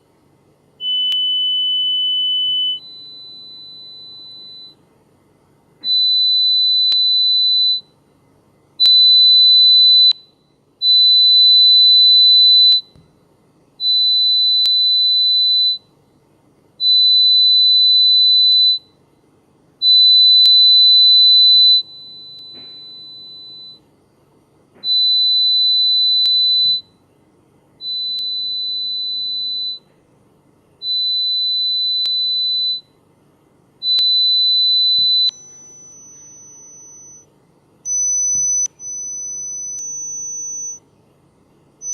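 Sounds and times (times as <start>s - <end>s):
high test tone beeps: 0.8s - 4.8s, 19.8s - 23.8s, 24.8s - 26.9s, 27.8s - 29.9s, 30.8s - 32.9s, 33.8s - 37.3s, 37.9s - 40.8s.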